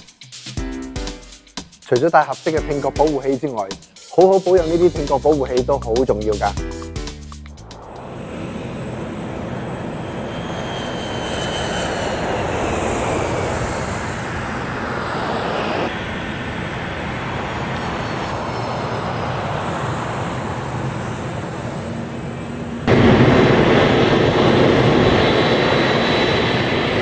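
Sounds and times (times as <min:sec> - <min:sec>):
loud engine roar: 0:07.9 - 0:27.0.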